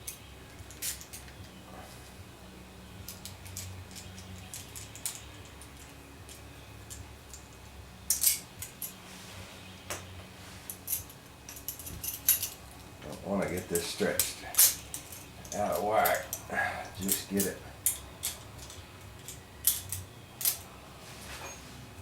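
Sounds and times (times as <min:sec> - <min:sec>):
faint low hum: 0:00.0 - 0:22.0
metallic clicks of tools on parts: 0:03.0 - 0:09.0, 0:10.7 - 0:20.7.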